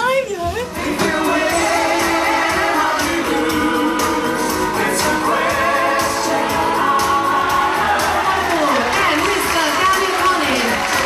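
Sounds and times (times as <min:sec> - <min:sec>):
group singing: 0:00.7 - 0:09.4.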